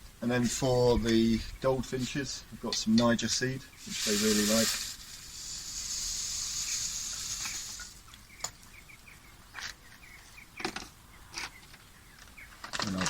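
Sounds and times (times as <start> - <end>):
small bird chirping: 1.0 - 12.6
seed pouring into bird feeder: 3.8 - 8.0.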